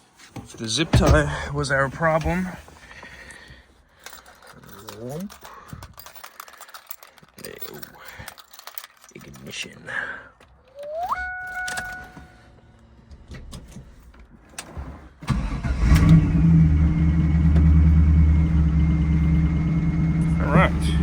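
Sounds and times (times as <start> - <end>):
car engine starting and idling: 0.9 - 2.8, 15.2 - 21.0.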